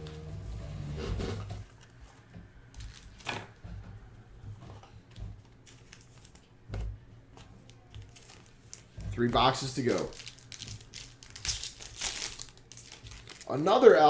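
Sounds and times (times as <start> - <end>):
cards and packaging rustling: 1.6 - 3.6, 4.8 - 14.0.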